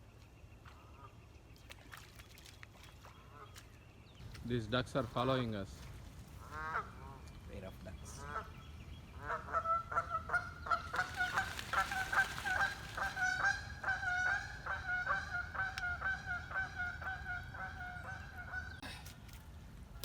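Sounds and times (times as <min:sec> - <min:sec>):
waterfowl honking: 0:06.4 - 0:07.3, 0:08.0 - 0:18.8.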